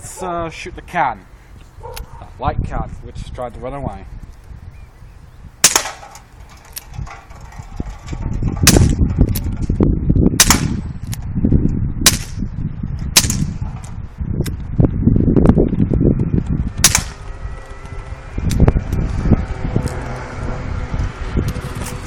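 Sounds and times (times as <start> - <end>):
air pistol shots: 5.6 - 6.2, 8.6 - 9.0, 10.4 - 10.8, 12.0 - 12.4, 13.2 - 13.6, 16.8 - 17.2.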